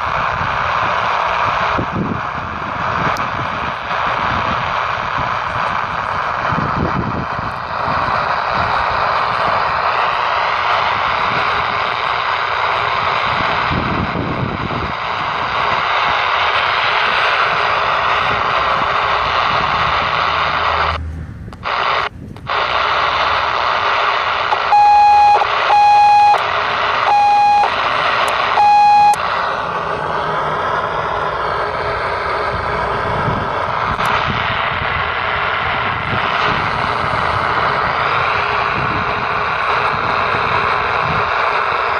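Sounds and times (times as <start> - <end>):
walkie-talkie static hiss: 2.8 - 21.0, 21.6 - 29.4, 33.6 - 41.9
short beeps: 24.5 - 26.4, 27.1 - 27.8, 28.5 - 29.2.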